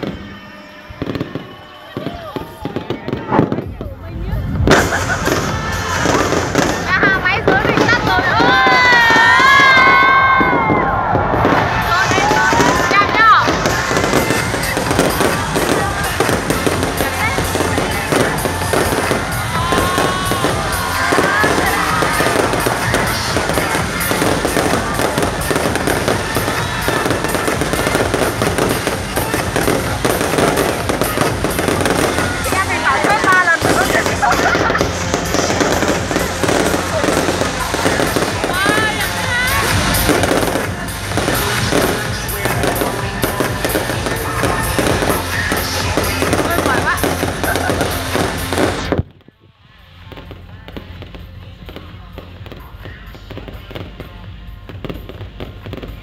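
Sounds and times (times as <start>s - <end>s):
fireworks bursting and crackling: 0.0s - 56.0s
music with bass line: 3.8s - 49.0s.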